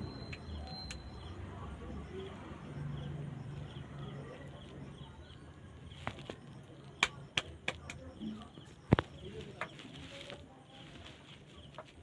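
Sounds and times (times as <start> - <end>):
neck cracking pops: 6.0 - 8.1, 8.9 - 9.9.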